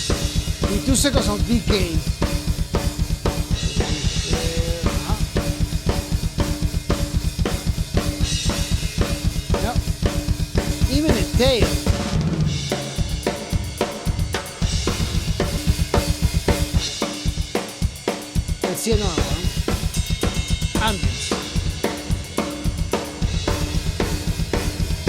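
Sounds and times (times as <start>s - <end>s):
cymbals: 0.0s - 25.0s
fast double bass drum: 0.0s - 25.0s.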